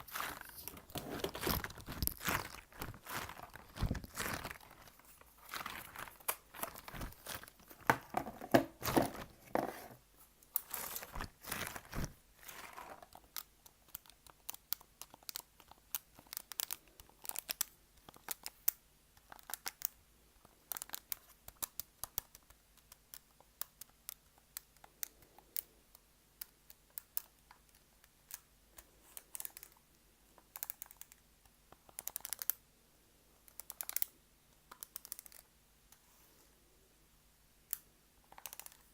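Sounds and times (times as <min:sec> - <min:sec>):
crinkling material: 0:00.0 - 0:10.0, 0:10.6 - 0:14.2.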